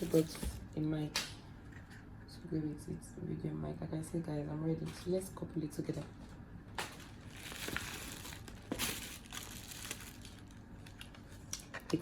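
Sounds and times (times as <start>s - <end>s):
packaging crinkling and rustling: 6.2s - 12.0s.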